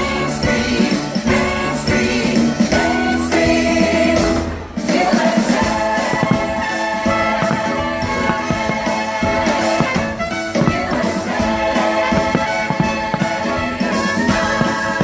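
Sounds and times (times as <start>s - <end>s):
fireworks show music: 0.0s - 15.0s.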